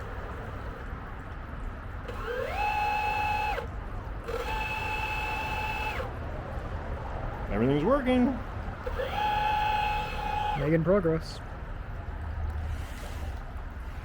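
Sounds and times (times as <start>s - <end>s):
small electric motor whining: 2.1s - 6.1s, 8.8s - 10.7s, 12.6s - 14.0s.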